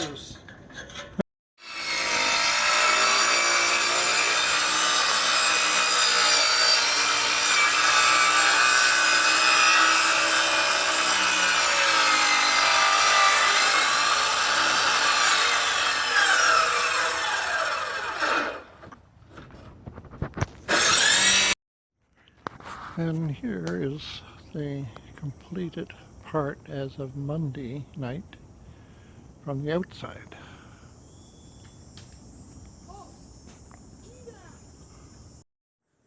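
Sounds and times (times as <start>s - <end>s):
power saw cutting wood: 1.6s - 18.9s, 20.7s - 21.6s.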